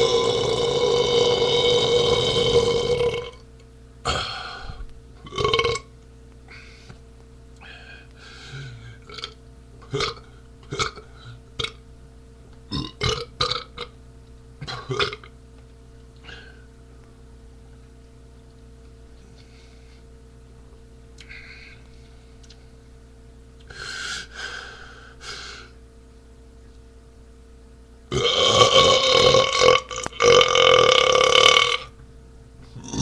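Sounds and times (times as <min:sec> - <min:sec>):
man burping: 0:00.0 - 0:03.4, 0:04.1 - 0:04.6, 0:05.2 - 0:05.9, 0:08.6 - 0:11.8, 0:12.7 - 0:13.9, 0:14.6 - 0:15.3, 0:28.1 - 0:31.9, 0:32.7 - 0:33.0.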